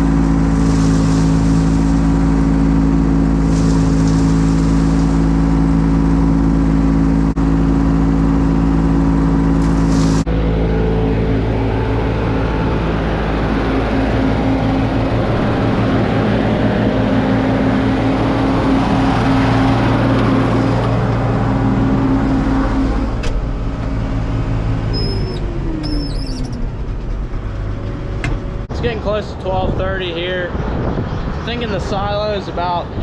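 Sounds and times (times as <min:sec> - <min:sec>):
diesel farm machinery running: 0:00.0 - 0:33.0
birds chirping: 0:24.9 - 0:26.7.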